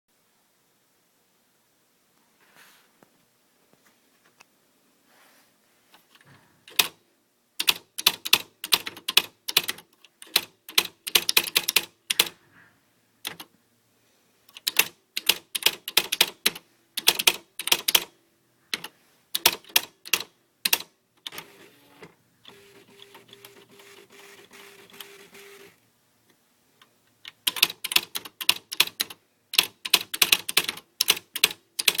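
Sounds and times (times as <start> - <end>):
electric typewriter keystrikes: 6.7 - 7.0, 7.6 - 12.4, 13.2 - 13.4, 14.5 - 18.1, 18.8 - 25.6, 27.4 - 32.0.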